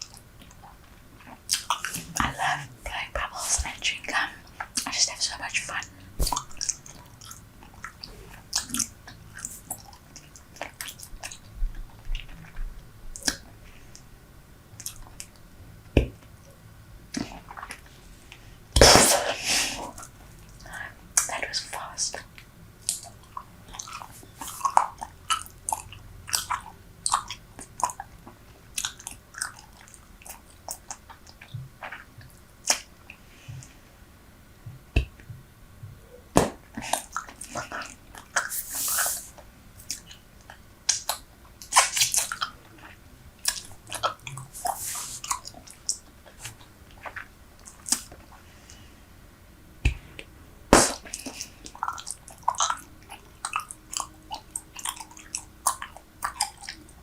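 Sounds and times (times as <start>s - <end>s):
bubble gum chewing: 19.9s - 32.9s, 49.9s - 57.0s
hissy sounds: 38.4s - 39.3s.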